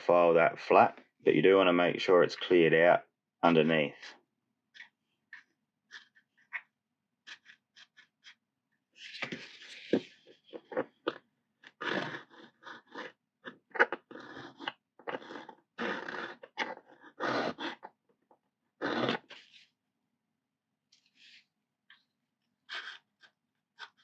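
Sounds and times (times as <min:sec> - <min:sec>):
file rasping on plastic: 0:07.2 - 0:08.4, 0:09.6 - 0:18.0, 0:22.6 - 0:24.0.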